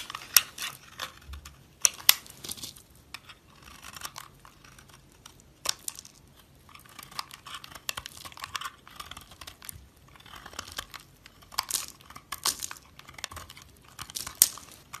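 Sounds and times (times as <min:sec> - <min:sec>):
knife cutting dry soap: 0:00.0 - 0:15.0.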